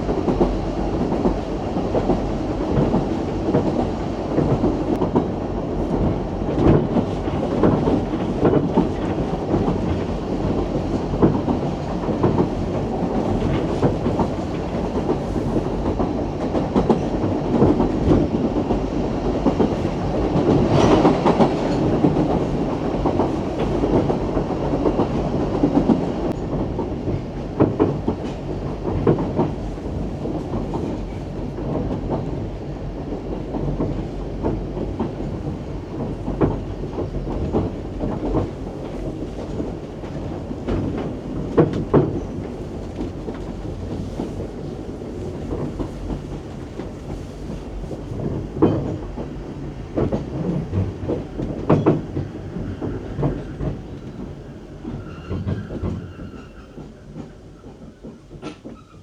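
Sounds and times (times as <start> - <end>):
train wheels clattering over rail joints: 33.1 - 59.0.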